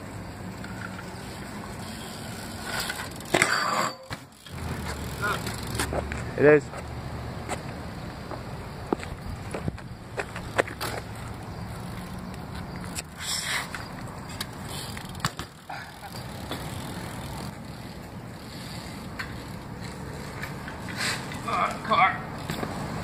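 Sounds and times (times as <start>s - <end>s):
bike rolling rumble: 0.0s - 23.0s
bike clicks and knocks: 0.5s - 23.0s.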